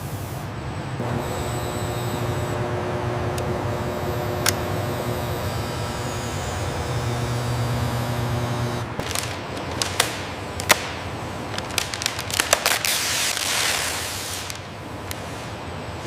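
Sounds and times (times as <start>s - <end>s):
low hum: 0.9s - 9.4s
sharp cracks and snaps: 9.0s - 15.2s.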